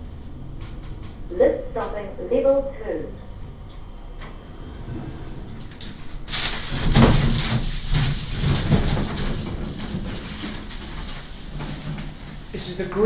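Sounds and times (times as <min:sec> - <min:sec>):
lift doors sliding open: 0:04.2 - 0:12.8.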